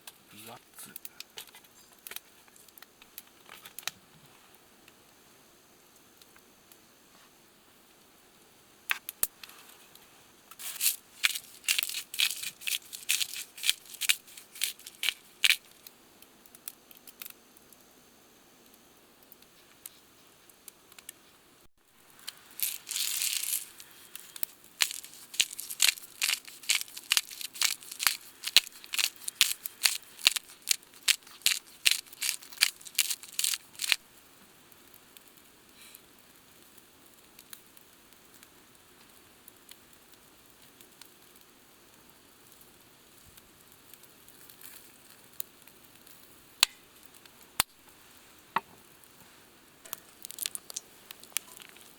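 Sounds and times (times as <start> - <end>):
rustling tearing noise: 10.6 - 15.9, 22.0 - 34.0, 49.9 - 51.9.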